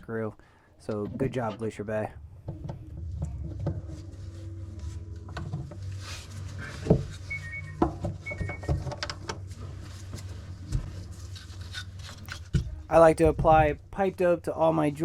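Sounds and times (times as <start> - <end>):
plumbing parts knocking and clicking: 0.9 - 4.1, 6.8 - 9.5
low hum: 0.9 - 13.2.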